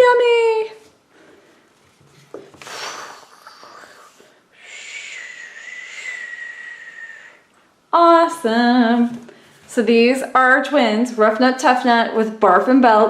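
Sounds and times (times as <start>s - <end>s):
person making wheezing sound: 2.6s - 7.4s.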